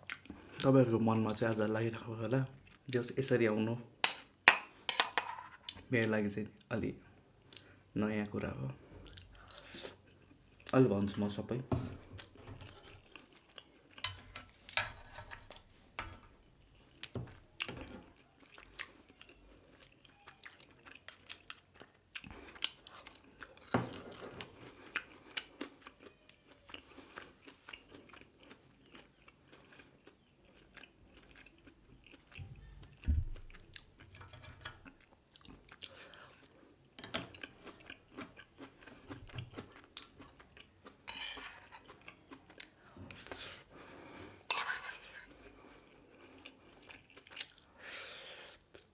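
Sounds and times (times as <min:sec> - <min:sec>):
chewing and mouth sounds: 0:00.0 - 0:00.7, 0:09.0 - 0:11.3, 0:12.0 - 0:14.1, 0:15.1 - 0:44.2, 0:45.3 - 0:47.8, 0:48.5 - 0:48.9.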